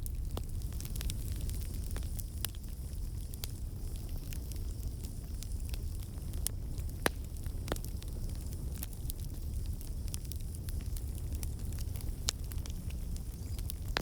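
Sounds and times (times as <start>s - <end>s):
low rumble: 0.0s - 2.0s
campfire crackling and popping: 0.0s - 14.0s.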